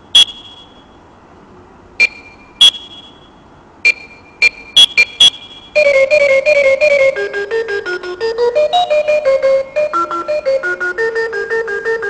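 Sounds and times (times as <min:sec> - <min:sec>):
short electronic beeps: 0:00.2 - 0:00.9, 0:02.0 - 0:06.0.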